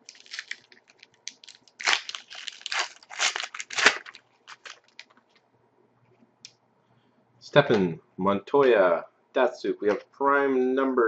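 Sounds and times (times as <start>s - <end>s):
wrapper crinkling as torn open: 0.0s - 5.2s
light wrapper rustles: 0.0s - 5.4s.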